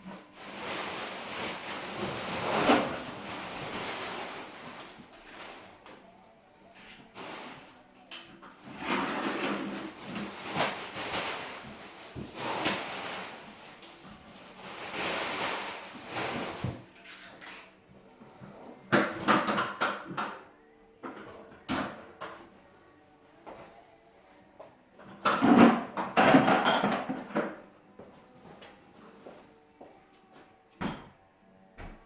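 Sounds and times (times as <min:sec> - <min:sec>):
scraping and sliding noises: 0:00.1 - 0:17.5.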